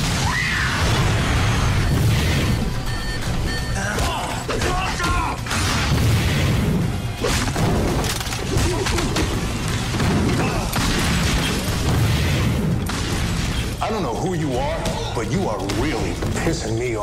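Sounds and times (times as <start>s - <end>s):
booms and crashing impacts: 4.6s - 14.0s.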